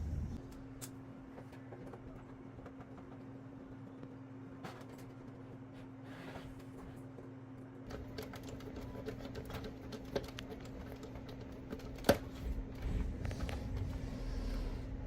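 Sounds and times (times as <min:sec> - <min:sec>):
low hum: 0:00.0 - 0:08.0, 0:11.5 - 0:15.0.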